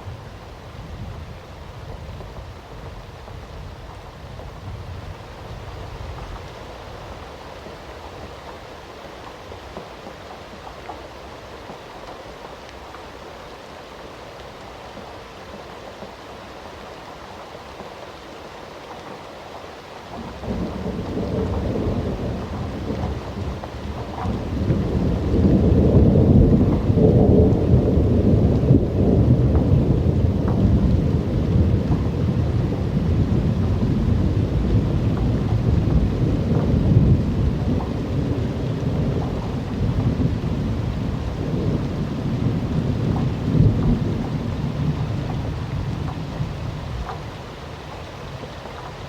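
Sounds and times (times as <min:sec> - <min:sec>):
steady rain falling: 0:00.0 - 0:49.0
deep roll of thunder: 0:20.1 - 0:47.6.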